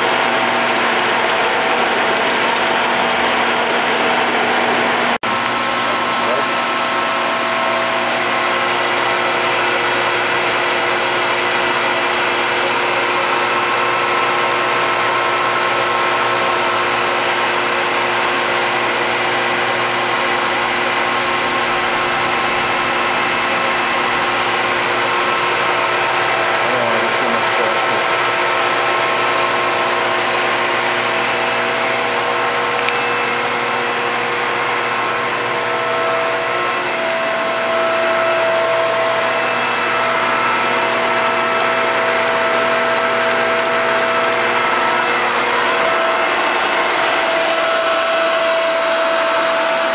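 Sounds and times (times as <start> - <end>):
gun drill mechanical whine: 22.0 - 48.1.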